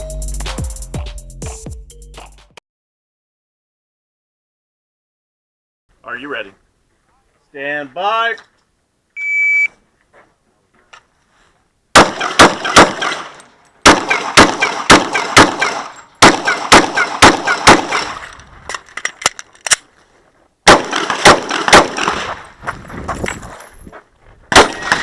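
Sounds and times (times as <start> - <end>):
pistol shots: 11.9 - 18.3, 20.6 - 22.4, 24.5 - 25.0.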